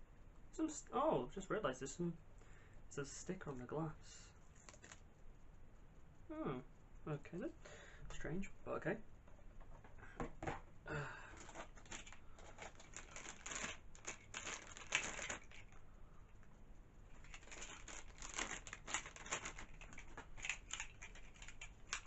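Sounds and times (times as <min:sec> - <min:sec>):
plastic and cardboard rustling: 0:11.2 - 0:15.8, 0:17.2 - 0:22.0.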